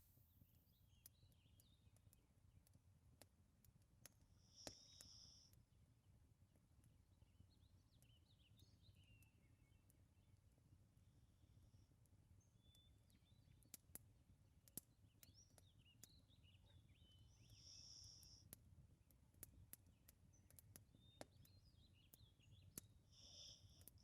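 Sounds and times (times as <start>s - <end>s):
bird chirps: 7.5s - 10.0s, 12.4s - 13.8s, 15.0s - 18.5s, 19.8s - 24.0s
wood fire crackling: 12.0s - 16.8s, 17.5s - 24.0s.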